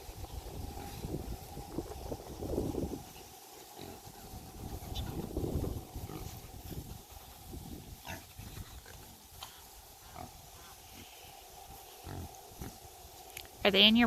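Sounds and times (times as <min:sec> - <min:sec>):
pigs grunting: 0:00.6 - 0:01.2, 0:03.6 - 0:13.0.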